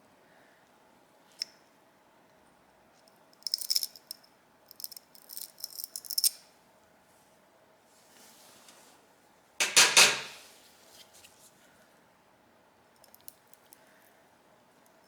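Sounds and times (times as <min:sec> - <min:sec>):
small metal tools clinking: 0:03.4 - 0:06.4.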